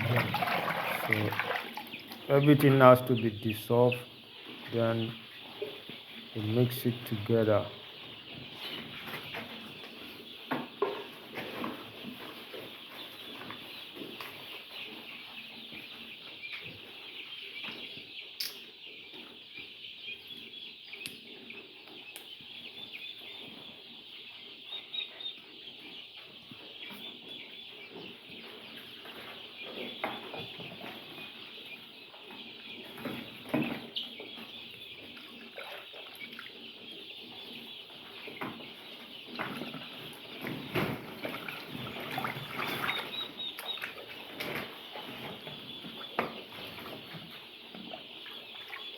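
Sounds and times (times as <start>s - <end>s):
chicks cheeping: 0.0s - 48.9s.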